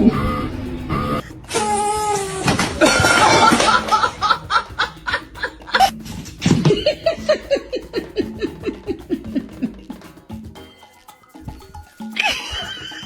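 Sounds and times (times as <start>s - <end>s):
person laughing: 2.7s - 10.0s, 12.2s - 13.0s.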